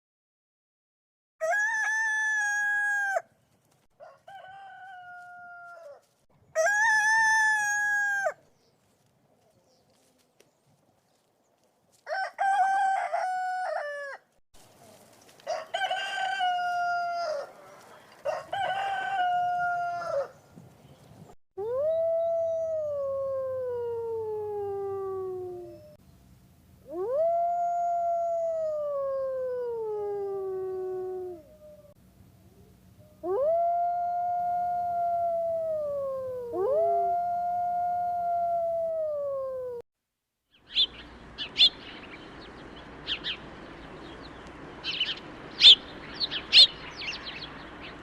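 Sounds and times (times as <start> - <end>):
rooster crowing: 1.4 - 3.3, 4.0 - 8.4, 12.0 - 14.3, 15.4 - 20.4
dog howling: 26.9 - 32.0, 33.2 - 39.8.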